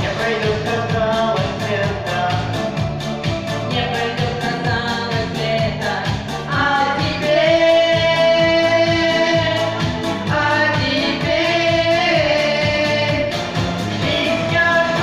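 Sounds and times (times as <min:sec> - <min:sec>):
backing band with drum beat: 0:00.0 - 0:15.0
vocal duet singing: 0:00.0 - 0:15.0.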